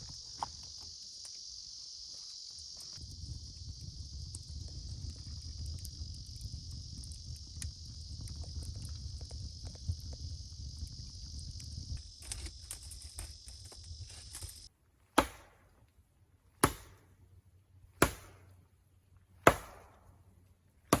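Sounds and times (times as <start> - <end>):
insect drone: 0.0 - 14.7
low rumble: 3.0 - 12.2
chopping blows into wood: 15.2 - 15.7, 16.6 - 17.1, 18.0 - 18.5, 19.4 - 20.0.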